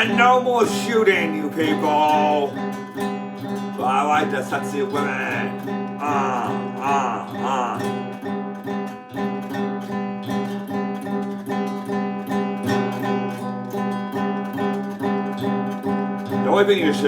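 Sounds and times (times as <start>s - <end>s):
person singing: 0.0s - 2.7s, 3.8s - 8.1s, 16.5s - 17.0s
acoustic guitar strumming: 0.0s - 17.0s.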